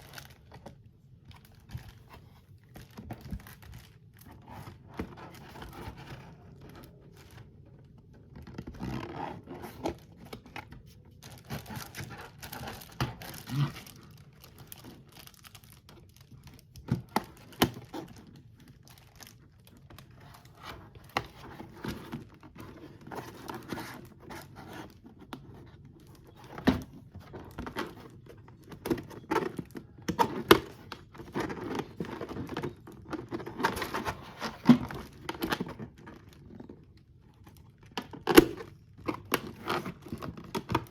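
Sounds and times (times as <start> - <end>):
plastic packaging crinkling and tearing: 0.0 - 40.9.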